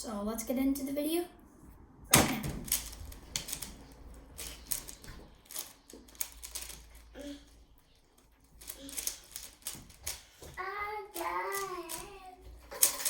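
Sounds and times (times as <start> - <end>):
puzzle cube clicking: 2.2 - 6.9.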